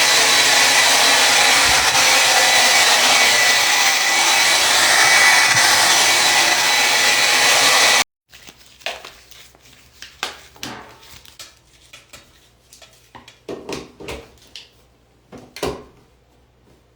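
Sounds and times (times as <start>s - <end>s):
hair dryer blowing: 0.0s - 8.1s.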